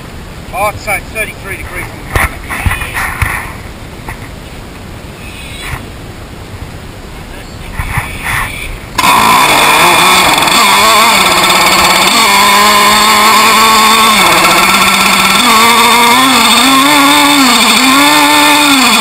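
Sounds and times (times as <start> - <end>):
model boat engine running: 9.0 - 19.0.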